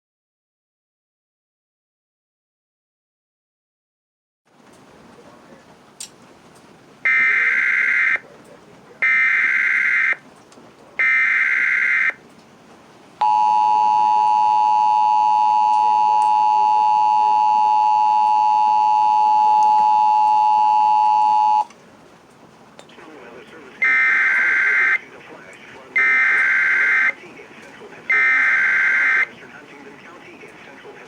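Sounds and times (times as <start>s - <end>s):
digital data bursts: 28.1s - 29.3s.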